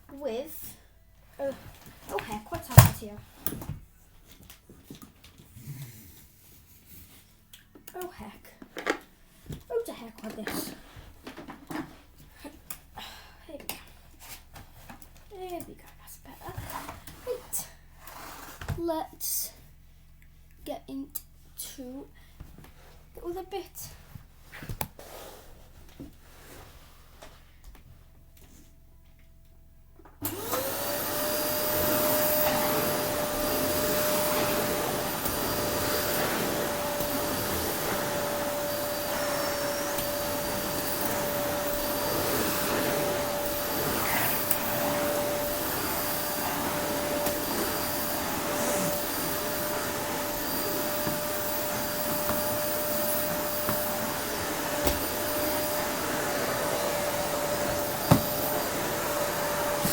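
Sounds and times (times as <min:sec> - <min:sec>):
vacuum cleaner motor whine: 0:30.2 - 0:59.9.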